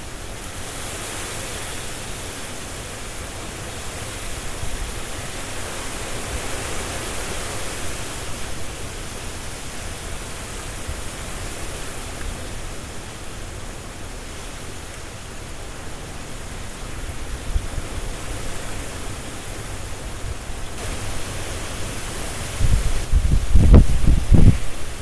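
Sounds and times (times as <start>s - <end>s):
wind rustling tree leaves: 0.0s - 25.0s.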